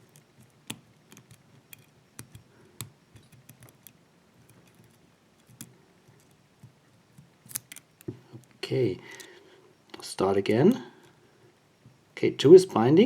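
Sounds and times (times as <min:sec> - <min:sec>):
lock pick clicking and scraping: 0:00.0 - 0:09.4.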